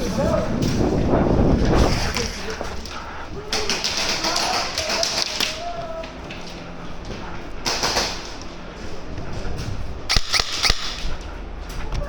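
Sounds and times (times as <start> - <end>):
airsoft guns snapping: 3.5 - 5.6, 7.6 - 8.5, 10.1 - 11.2.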